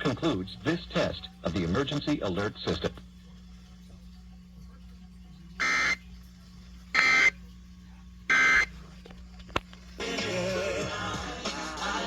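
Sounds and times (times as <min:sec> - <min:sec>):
steady low hum: 0:00.0 - 0:12.0
digital data bursts: 0:05.6 - 0:06.0, 0:06.9 - 0:07.4, 0:08.3 - 0:08.7.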